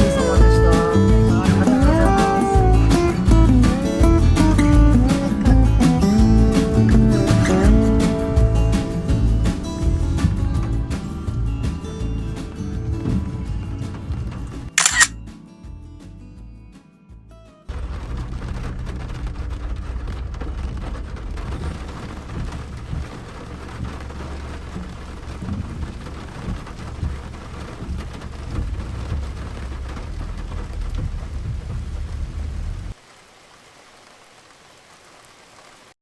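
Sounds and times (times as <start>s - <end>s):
rush of falling water: 0.0s - 15.1s, 17.7s - 36.0s
faint steady hiss: 17.7s - 36.0s.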